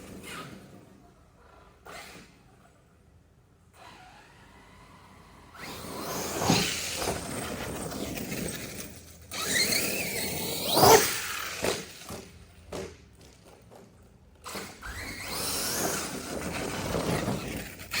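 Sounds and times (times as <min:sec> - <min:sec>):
rc car electric motor whining: 0:03.7 - 0:12.4, 0:14.4 - 0:18.0.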